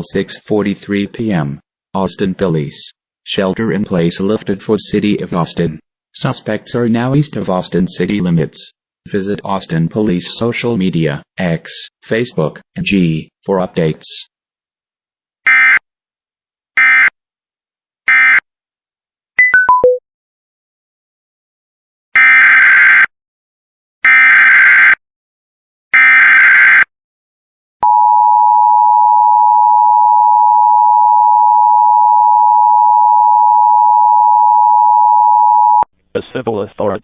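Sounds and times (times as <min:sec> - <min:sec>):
quick beeps falling in pitch: 0:19.4 - 0:20.0
two-tone attention signal: 0:19.4 - 0:20.0.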